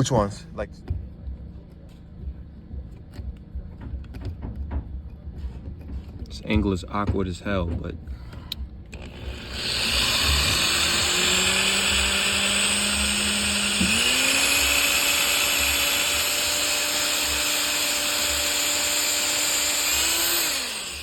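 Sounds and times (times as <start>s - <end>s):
electric drill boring into steel: 8.9s - 21.0s.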